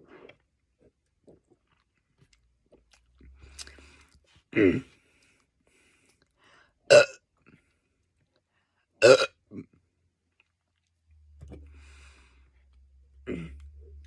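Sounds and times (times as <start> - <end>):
mouth clicks and smacks: 1.2 - 4.2
man belching: 4.6 - 4.9, 6.9 - 7.2, 9.0 - 9.7, 13.2 - 13.7.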